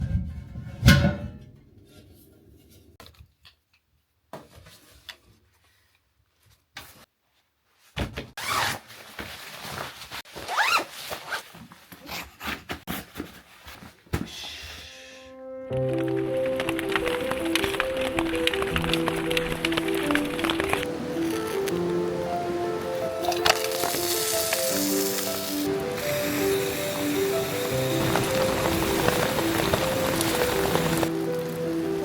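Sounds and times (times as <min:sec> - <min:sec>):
rustling and handling noise: 0:04.3 - 0:14.3, 0:15.8 - 0:22.2
zipper being pulled: 0:10.4 - 0:11.4.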